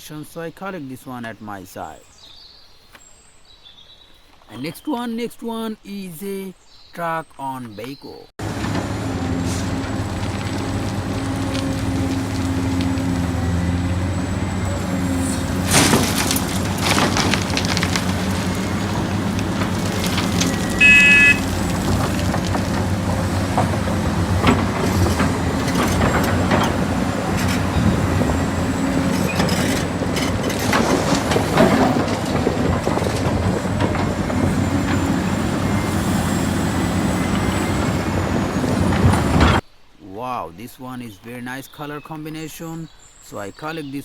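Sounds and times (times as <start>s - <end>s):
truck engine running: 8.4s - 39.6s
horn beep: 20.5s - 21.7s.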